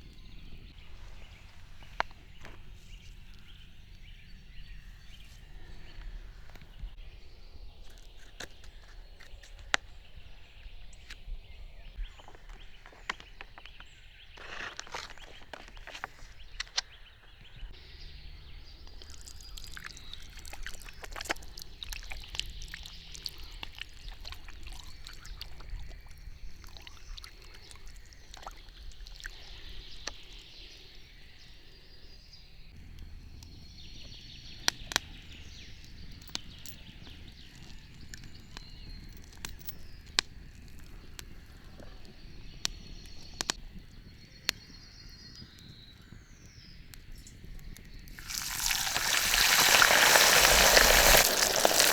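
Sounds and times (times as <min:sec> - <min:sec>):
fire pops and snaps: 0:35.8 - 0:44.7, 0:46.3 - 0:51.9
wood fire crackling: 0:47.0 - 0:51.9.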